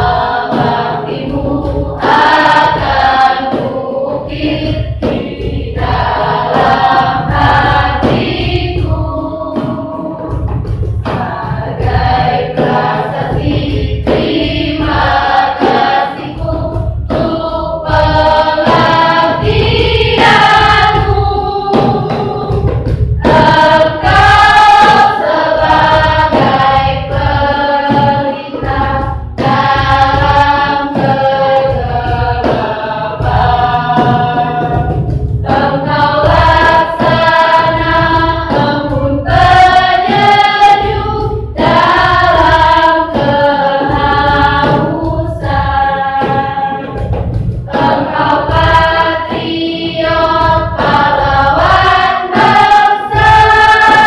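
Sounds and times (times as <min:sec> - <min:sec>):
choir singing in parts: 0:00.0 - 0:54.0
heavy low bass: 0:46.8 - 0:47.7.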